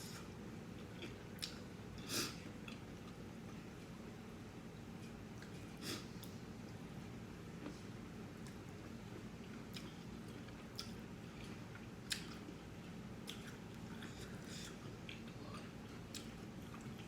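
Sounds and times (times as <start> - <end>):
person chewing: 0.8 - 3.2, 7.6 - 17.0.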